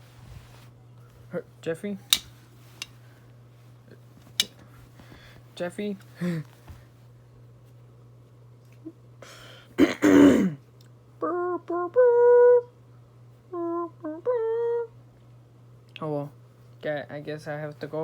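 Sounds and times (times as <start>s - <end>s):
person coughing harshly: 9.8s - 10.6s
person humming: 11.2s - 12.7s, 13.4s - 15.0s.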